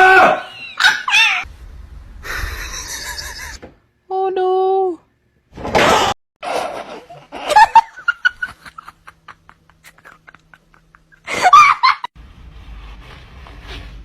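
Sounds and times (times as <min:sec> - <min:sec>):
person laughing: 0:02.2 - 0:03.6, 0:06.4 - 0:12.1.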